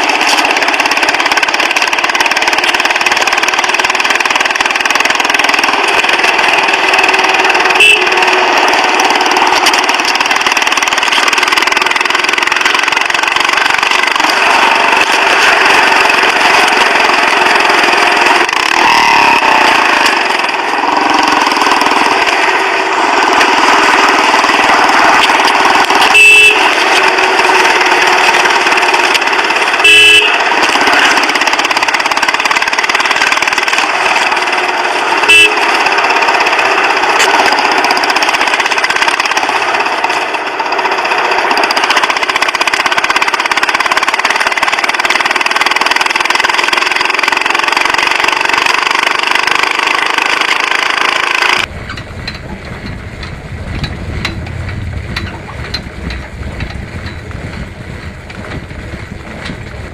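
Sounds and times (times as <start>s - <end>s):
loud road noise: 0.0s - 59.9s
vehicle horn beeps: 7.6s - 8.6s, 26.0s - 27.6s, 29.7s - 30.6s, 35.2s - 35.9s.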